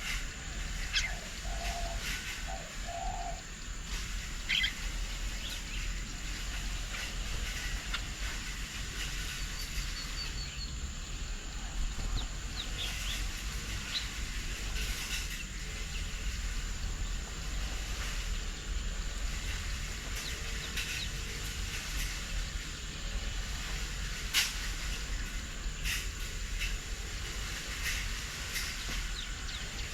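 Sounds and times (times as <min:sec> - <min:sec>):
constant high hiss: 0:00.0 - 0:29.9
steady low rumble: 0:00.0 - 0:29.9
bird chirps and calls: 0:00.8 - 0:03.4, 0:04.3 - 0:06.0, 0:12.2 - 0:14.2.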